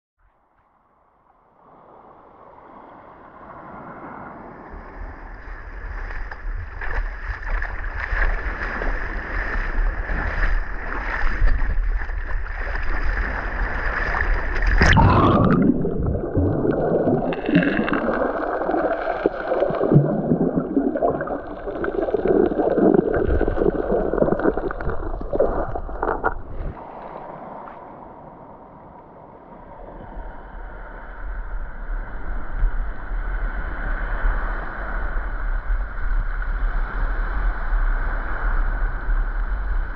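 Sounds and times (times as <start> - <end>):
sea water sloshing and gurgling: 1.6 - 28.9
wind on microphone: 3.4 - 28.5
muffled underwater bubbling: 14.1 - 26.8.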